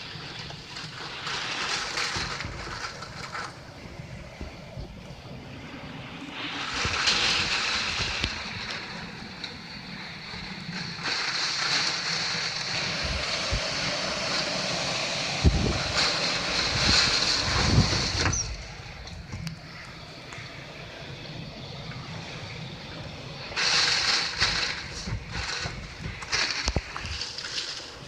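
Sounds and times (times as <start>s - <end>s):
strong wind gusting: 0.0s - 28.0s
wind buffeting microphone: 0.0s - 28.0s.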